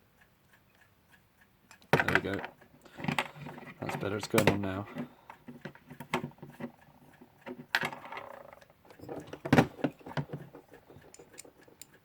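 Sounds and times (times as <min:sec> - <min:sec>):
small metal parts clicking: 0:07.7 - 0:12.0.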